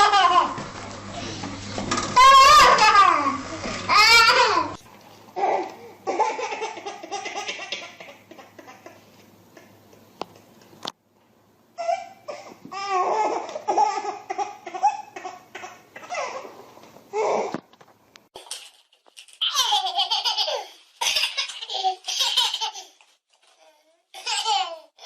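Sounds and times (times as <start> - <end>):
baby laughing: 0.0 - 0.6, 2.2 - 4.8, 5.4 - 9.7, 11.8 - 16.5, 19.4 - 23.1, 24.2 - 25.0.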